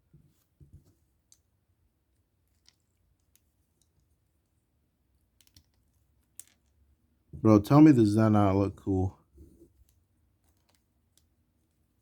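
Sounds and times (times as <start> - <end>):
faint plastic clicks and taps: 5.2 - 6.9, 9.4 - 11.8.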